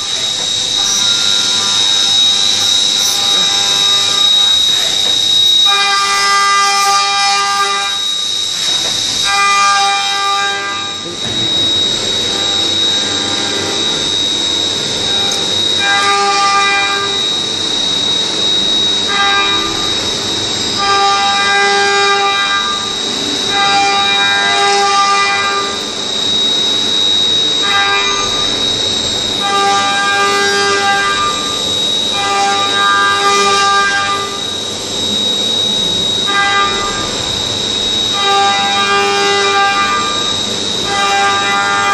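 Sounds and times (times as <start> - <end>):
low tones: 0.0 - 15.8
machine high-pitched whine: 0.0 - 41.9
metal cutting noise: 0.0 - 41.9.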